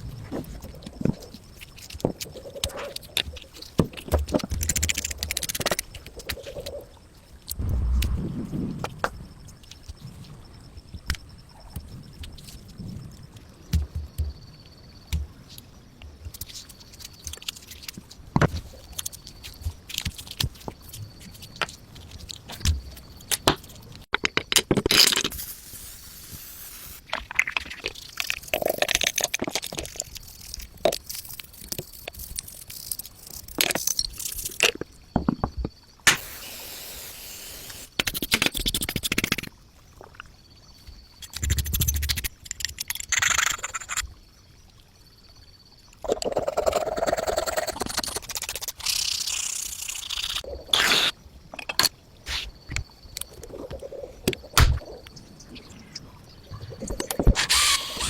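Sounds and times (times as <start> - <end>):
steady hiss: 25.3 - 27.1, 36.1 - 38.0.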